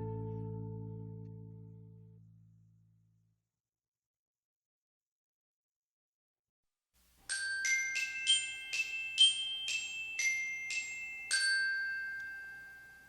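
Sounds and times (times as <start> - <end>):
glockenspiel-like bell notes: 7.3 - 13.0.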